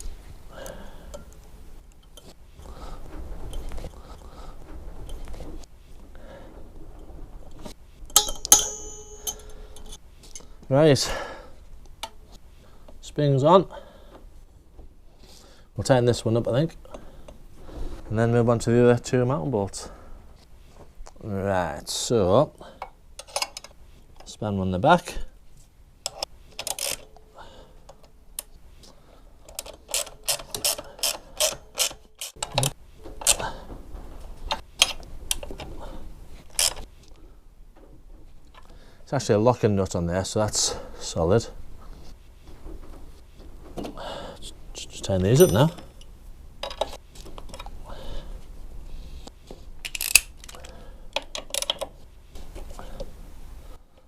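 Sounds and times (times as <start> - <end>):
metal hand tools clinking: 8.1 - 10.5, 45.3 - 46.1
ratchet wrench clicking: 49.9 - 50.3.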